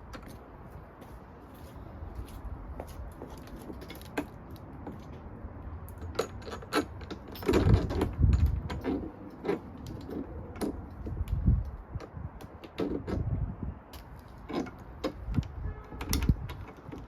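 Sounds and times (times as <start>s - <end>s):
handling clicks and rattles: 3.1s - 5.2s, 5.8s - 13.3s, 13.9s - 17.0s.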